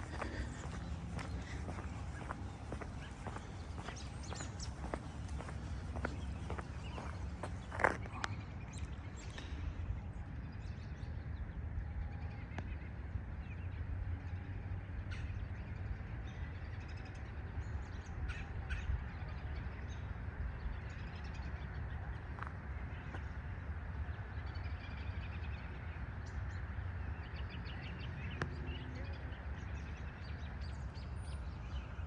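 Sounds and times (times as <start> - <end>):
steady low rumble: 0.0 - 14.5.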